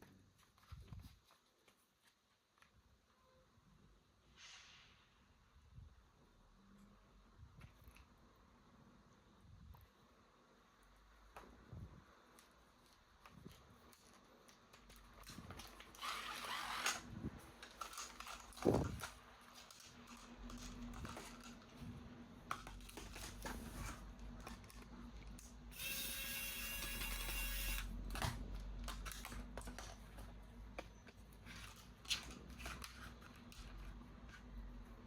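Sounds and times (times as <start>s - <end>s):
packaging rustling: 12.4s - 21.9s.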